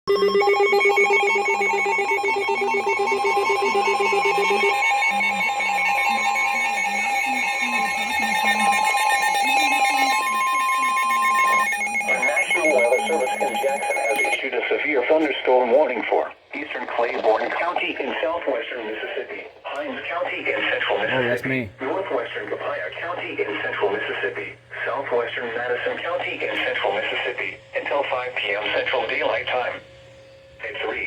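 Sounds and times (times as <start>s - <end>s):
buzzing beeping electronic tones: 0.1s - 14.4s
steady high alert tone: 0.1s - 14.5s
broadcast voice: 11.7s - 29.8s.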